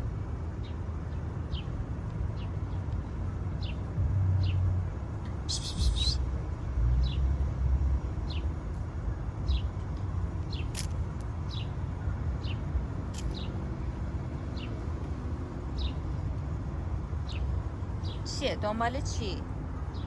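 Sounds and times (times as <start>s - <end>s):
bird chirping: 5.5s - 6.2s.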